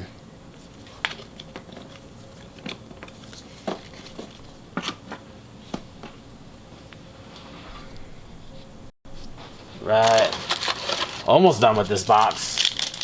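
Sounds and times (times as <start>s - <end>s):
wrapper crinkling: 9.9s - 13.0s.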